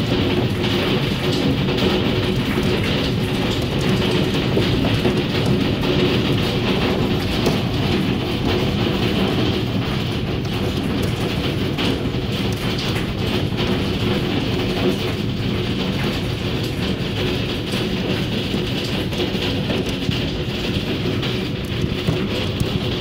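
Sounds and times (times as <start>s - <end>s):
hail clattering on hard surfaces: 0.0s - 23.0s.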